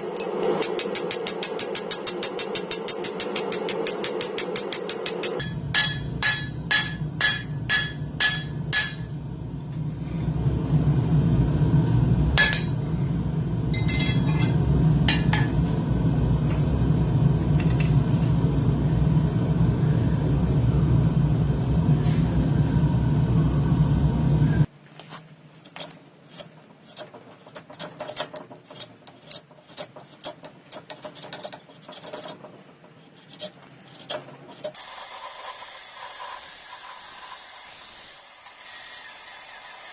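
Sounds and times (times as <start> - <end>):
hammer striking steel on anvil: 0.0 - 9.4, 12.4 - 12.8, 13.7 - 15.6.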